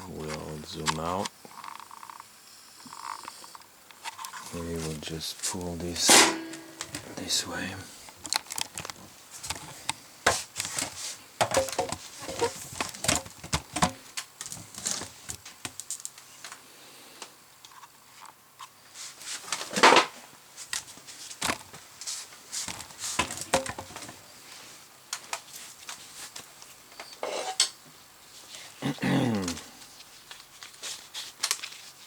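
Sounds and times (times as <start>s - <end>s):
hands working on metal box: 10.3s - 14.0s.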